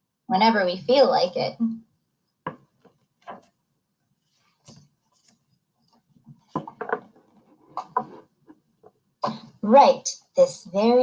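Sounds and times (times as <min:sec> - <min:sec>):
book page turning rustles: 0:04.2 - 0:05.5.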